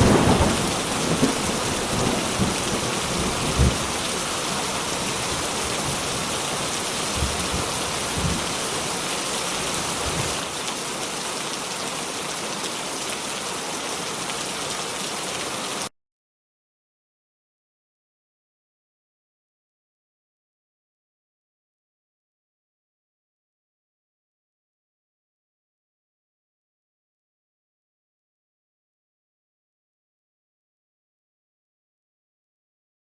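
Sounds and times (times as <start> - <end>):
low thunder rumbles: 0.0 - 8.8
heavy rain: 0.0 - 15.9.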